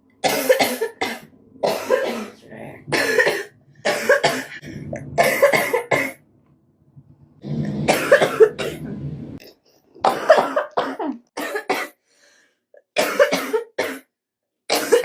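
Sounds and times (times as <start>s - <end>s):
woman coughing: 0.2s - 4.6s, 5.2s - 6.2s, 7.9s - 8.9s, 10.0s - 12.0s, 13.0s - 14.1s, 14.7s - 15.0s.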